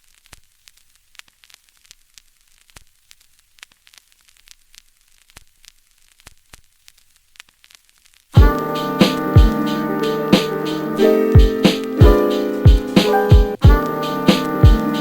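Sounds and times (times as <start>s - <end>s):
record surface crackles and pops: 0.0s - 15.0s
piano and keyboard music: 8.4s - 15.0s.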